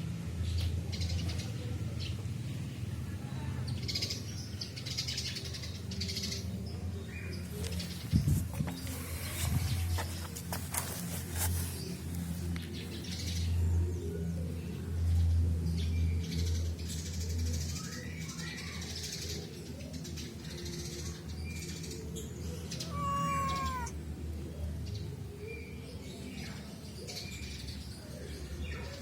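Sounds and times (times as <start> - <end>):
cat meowing: 22.7 - 24.0.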